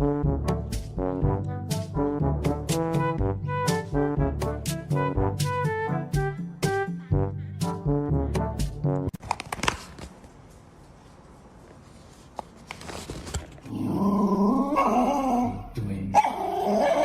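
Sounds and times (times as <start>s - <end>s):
dog howling: 14.0s - 15.6s, 16.2s - 17.0s.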